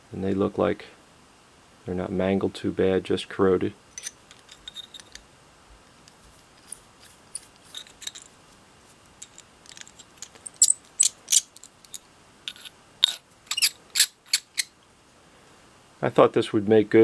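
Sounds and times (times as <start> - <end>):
small metal parts clinking: 3.9 - 5.3, 6.1 - 8.4, 9.1 - 14.7.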